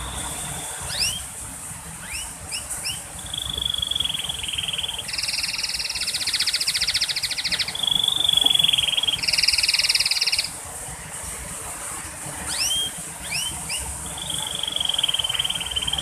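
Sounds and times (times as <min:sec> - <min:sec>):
canary trilling: 0:00.0 - 0:01.3, 0:01.9 - 0:10.6, 0:12.4 - 0:16.0
quick rising chirps: 0:00.0 - 0:01.3.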